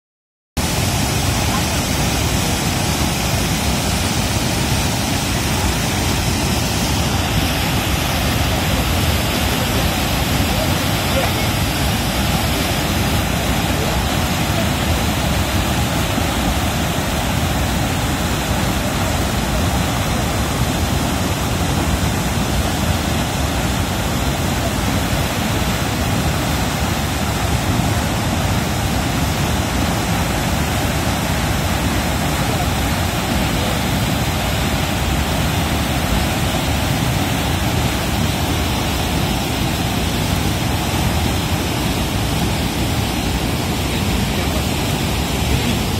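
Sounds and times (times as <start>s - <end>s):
river water rushing and roaring: 0.6s - 45.9s.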